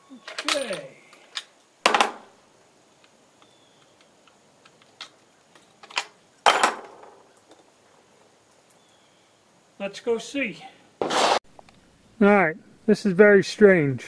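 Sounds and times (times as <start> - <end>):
rifle shot: 11.0 - 11.4.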